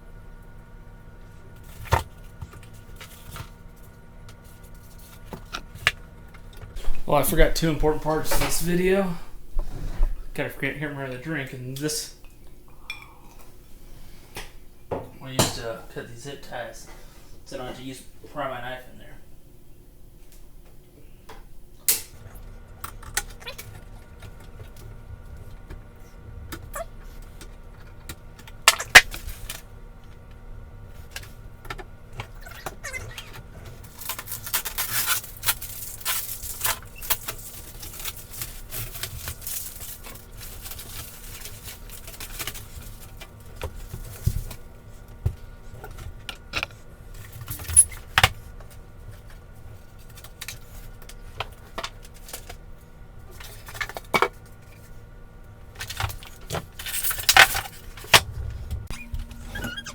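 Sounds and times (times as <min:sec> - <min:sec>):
packaging rustling: 0:33.8 - 0:44.6.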